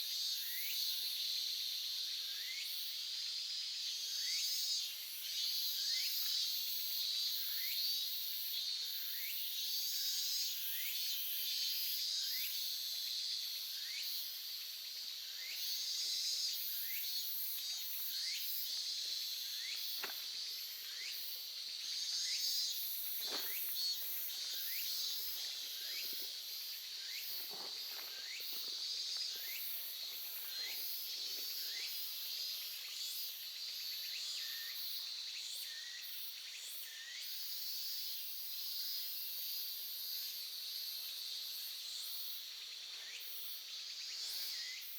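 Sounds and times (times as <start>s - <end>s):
insects chirring: 10.0s - 36.4s.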